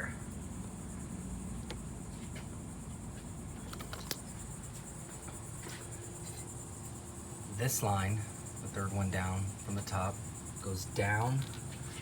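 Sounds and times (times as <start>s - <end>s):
crickets chirping: 0.0s - 12.0s
hoses and fittings clicking: 3.6s - 4.3s.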